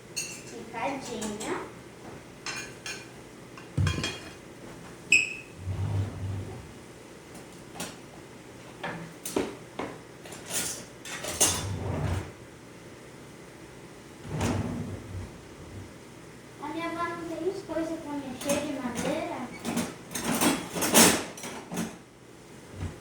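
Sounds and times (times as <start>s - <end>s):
pans knocking and clattering: 3.8s - 4.4s.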